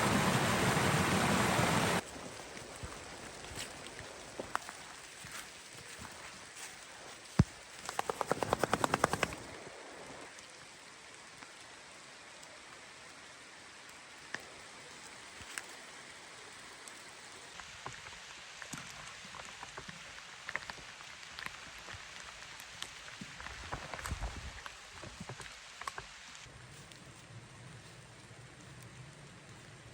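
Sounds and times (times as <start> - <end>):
steady rain hissing: 0.0 - 29.9.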